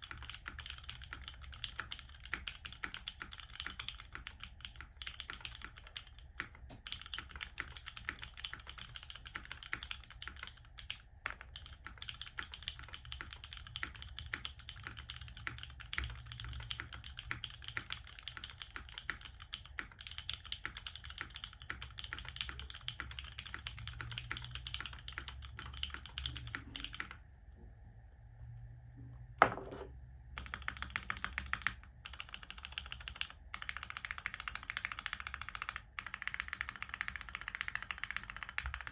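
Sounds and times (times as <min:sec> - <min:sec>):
fast typing on mechanical keyboard: 0:00.0 - 0:27.2, 0:30.4 - 0:38.9.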